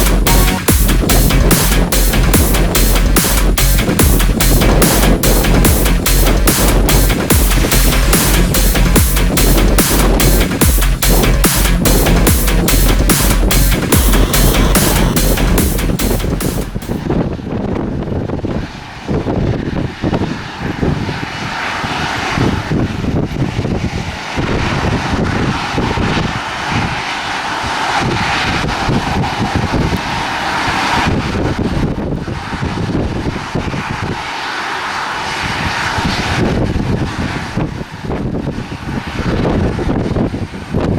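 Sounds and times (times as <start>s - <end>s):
jet engines roaring: 0.0s - 40.5s
wind buffeting microphone: 0.0s - 40.9s.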